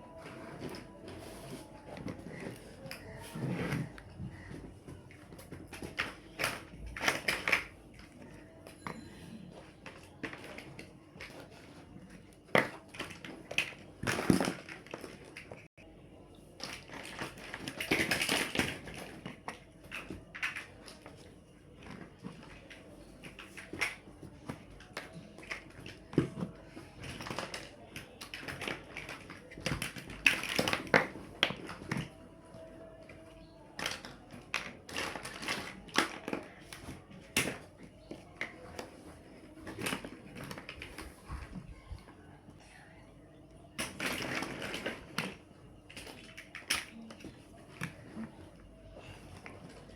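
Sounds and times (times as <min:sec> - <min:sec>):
plastic building blocks clattering: 0:00.1 - 0:08.8, 0:09.5 - 0:15.7, 0:16.5 - 0:42.0, 0:43.7 - 0:49.9
plastic blocks clicking: 0:05.3 - 0:08.8.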